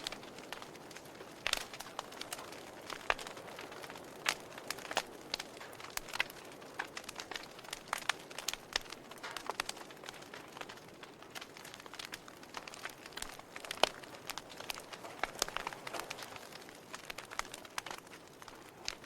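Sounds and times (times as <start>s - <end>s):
fire crackling and popping: 0.0s - 19.0s
fire soft hiss: 0.0s - 19.0s.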